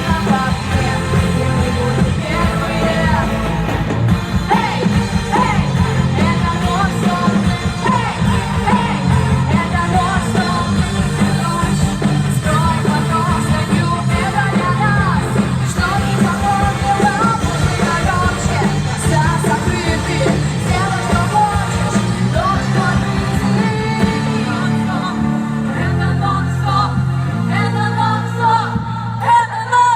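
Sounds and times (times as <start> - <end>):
pop-rock band playing: 0.0 - 29.8
person singing: 0.0 - 29.9.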